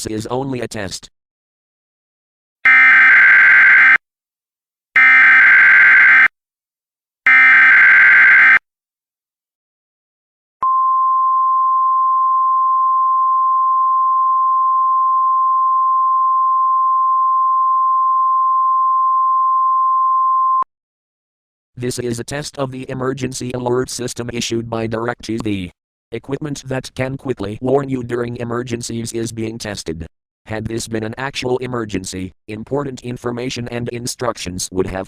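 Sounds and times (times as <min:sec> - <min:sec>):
steady high-pitched alert tone: 0:05.0 - 0:06.3.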